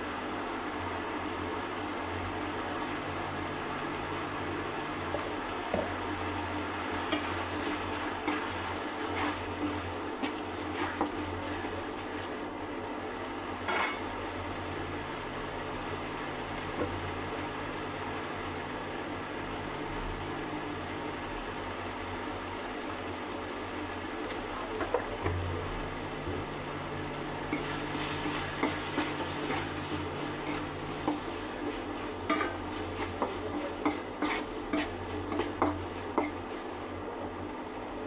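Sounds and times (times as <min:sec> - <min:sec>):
utensil clinking against pot: 0:32.2 - 0:36.4.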